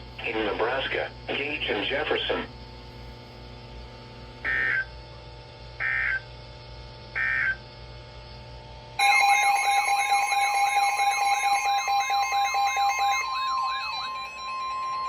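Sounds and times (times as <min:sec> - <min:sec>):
steady low hum: 0:00.0 - 0:15.0
wavering siren-like alert tone: 0:04.4 - 0:04.9, 0:05.8 - 0:06.2, 0:07.2 - 0:07.6, 0:09.0 - 0:15.0
squawking digital data tones: 0:04.5 - 0:04.9, 0:05.8 - 0:06.3, 0:07.2 - 0:07.6, 0:11.8 - 0:15.0.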